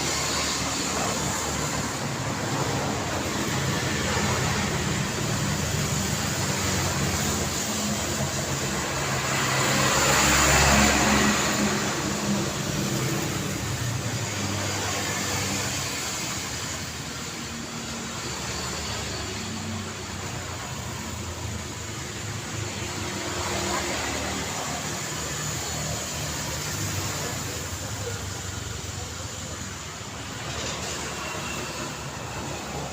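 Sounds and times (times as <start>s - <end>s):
vehicle passing close: 0.0s - 16.4s
passing cars hum: 0.0s - 32.9s.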